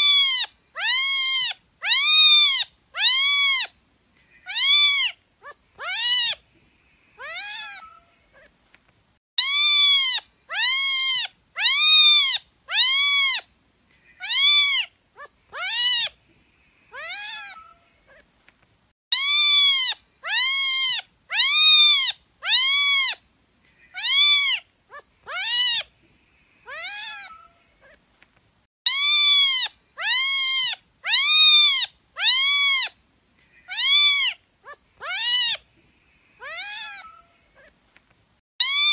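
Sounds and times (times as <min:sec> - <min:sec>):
cat meowing: 0:00.0 - 0:03.7, 0:04.4 - 0:06.4, 0:07.2 - 0:08.5, 0:09.4 - 0:13.4, 0:14.2 - 0:16.2, 0:16.9 - 0:18.2, 0:19.1 - 0:23.2, 0:23.9 - 0:25.9, 0:26.7 - 0:28.0, 0:28.9 - 0:32.9, 0:33.6 - 0:35.6, 0:36.4 - 0:37.7.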